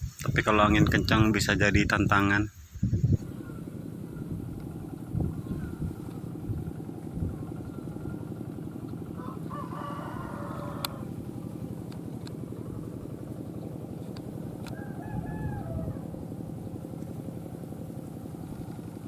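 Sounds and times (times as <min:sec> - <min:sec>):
wind rumbling on microphone: 0:00.0 - 0:19.0
rooster crowing: 0:06.8 - 0:12.8, 0:14.4 - 0:17.4.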